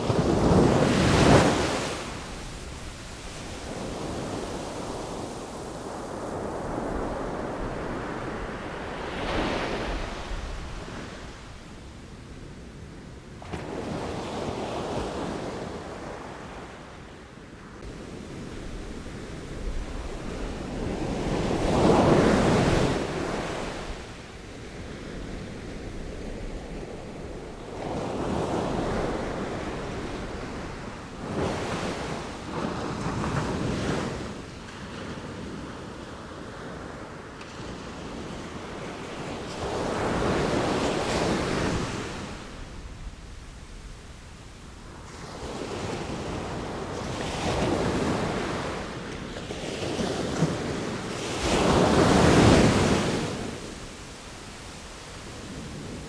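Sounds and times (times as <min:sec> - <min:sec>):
sea waves breaking: 0:45.9 - 0:56.0.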